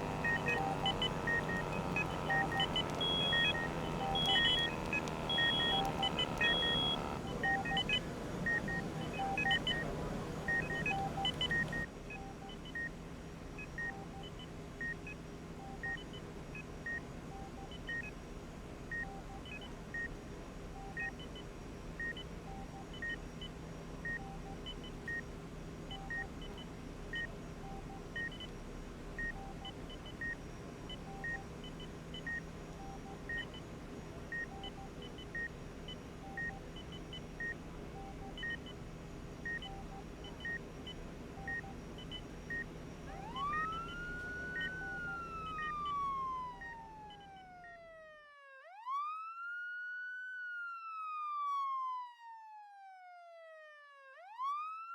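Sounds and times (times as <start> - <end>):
patient monitor beeping: 0.0 - 12.8, 34.3 - 47.4
room hum: 0.0 - 12.8, 26.0 - 47.5
emergency vehicle siren wailing: 43.0 - 54.9.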